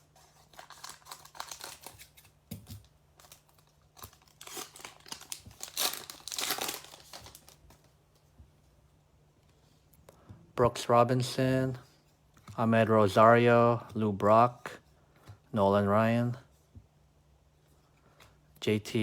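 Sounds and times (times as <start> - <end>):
card pack wrapper tearing and crinkling: 0.1 - 7.8.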